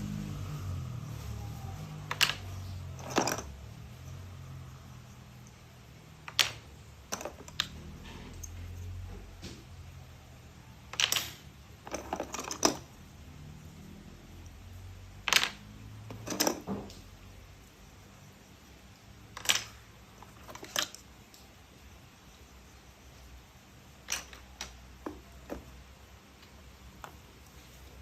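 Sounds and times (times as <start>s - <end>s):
plastic toy parts clicking: 2.0s - 3.7s, 6.2s - 8.9s, 10.8s - 13.0s, 15.2s - 16.8s, 19.3s - 21.5s, 24.0s - 25.7s.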